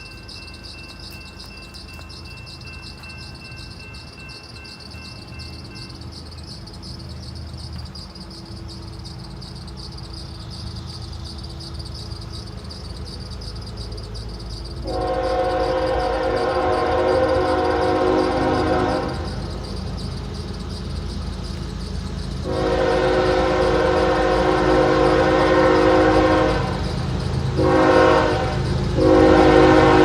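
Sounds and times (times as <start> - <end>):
freight train rumble: 0.0 - 30.0
locomotive horn chord: 14.8 - 19.5, 22.4 - 30.0.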